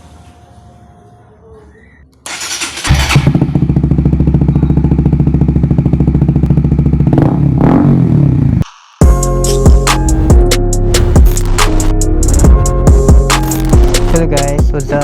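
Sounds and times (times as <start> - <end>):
motorcycle engine idling and revving: 2.2 - 11.6.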